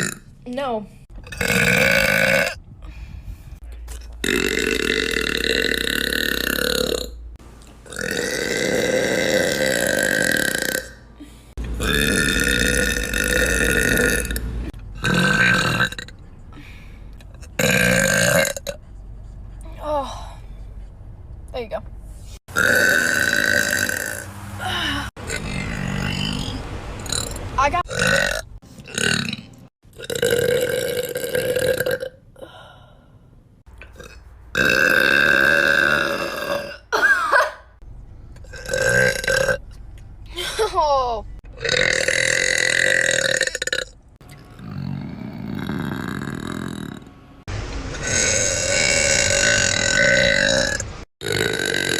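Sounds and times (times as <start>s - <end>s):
person belching: 0.0s - 0.2s, 1.2s - 2.6s, 4.0s - 7.2s, 7.8s - 11.0s, 11.6s - 14.4s, 15.0s - 16.1s, 17.6s - 18.8s, 22.5s - 24.2s, 25.2s - 32.2s, 33.8s - 37.5s, 38.4s - 39.6s, 41.5s - 47.1s, 48.0s - 51.9s
person burping loudly: 0.0s - 0.3s, 1.2s - 2.6s, 4.0s - 7.2s, 7.8s - 16.2s, 17.4s - 18.8s, 22.5s - 32.6s, 33.8s - 37.5s, 38.4s - 39.6s, 41.5s - 47.1s, 48.0s - 51.9s.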